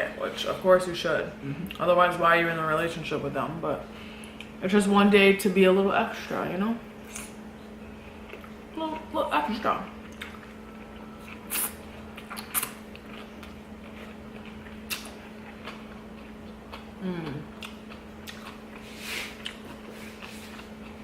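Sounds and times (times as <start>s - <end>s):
low electrical hum: 0.0s - 21.0s
person chewing and crunching food: 7.1s - 9.1s, 9.9s - 21.0s.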